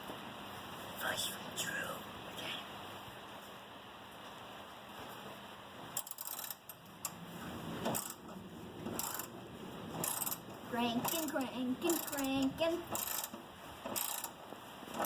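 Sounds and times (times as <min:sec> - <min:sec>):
ratchet wrench clicking: 0:06.0 - 0:07.2, 0:07.9 - 0:08.3, 0:08.9 - 0:09.3, 0:10.0 - 0:12.3, 0:12.9 - 0:15.0.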